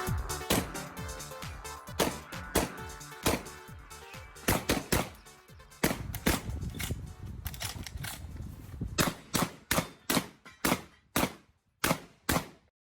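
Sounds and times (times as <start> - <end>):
shotgun shots: 0.5 - 0.9, 2.0 - 3.6, 4.4 - 7.0, 9.0 - 12.7.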